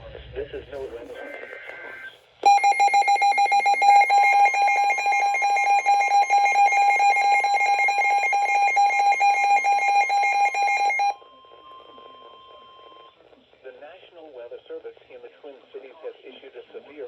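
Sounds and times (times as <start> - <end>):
pulsing high alert tone: 2.5 - 11.2.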